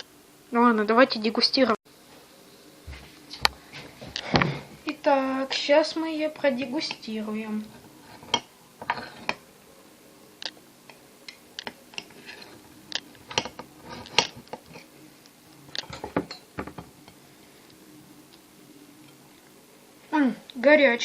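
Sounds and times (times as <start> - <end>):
plate and utensils clattering: 8.0 - 9.4, 15.8 - 16.9.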